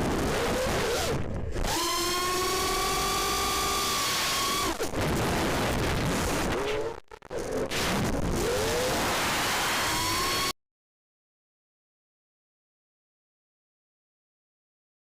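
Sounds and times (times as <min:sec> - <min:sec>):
quadcopter motors whining: 0:00.4 - 0:04.9, 0:08.3 - 0:10.5.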